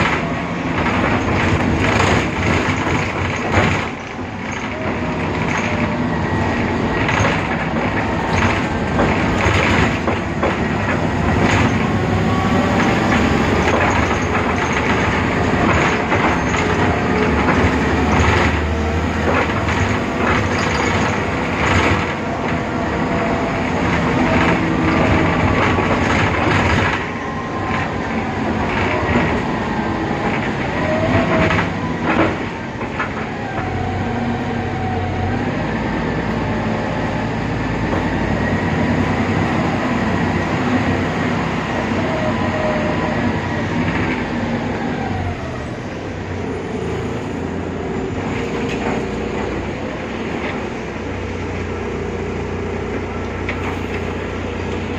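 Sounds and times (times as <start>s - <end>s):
knocks and rattles: 0.0s - 33.7s
bus engine running: 0.0s - 54.9s.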